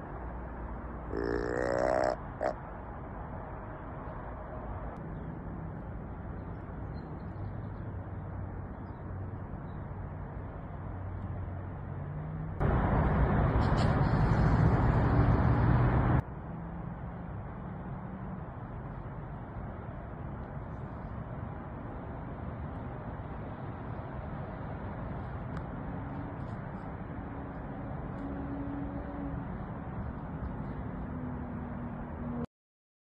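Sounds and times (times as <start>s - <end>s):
deer grunt: 1.1s - 2.5s.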